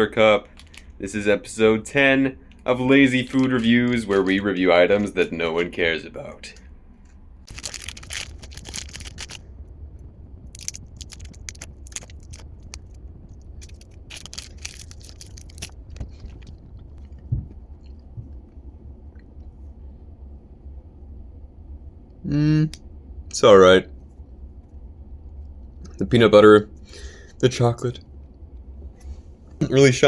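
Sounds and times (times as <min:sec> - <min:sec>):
low steady hum: 0:00.0 - 0:30.0
wrapper crinkling and tearing: 0:00.5 - 0:00.9, 0:07.4 - 0:09.5, 0:10.4 - 0:17.2
chewing: 0:10.5 - 0:19.5.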